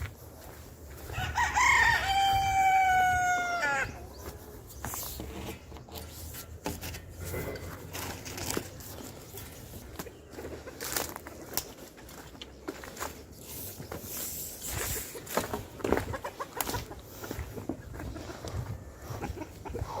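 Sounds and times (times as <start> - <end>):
rooster crowing: 1.0 - 4.0.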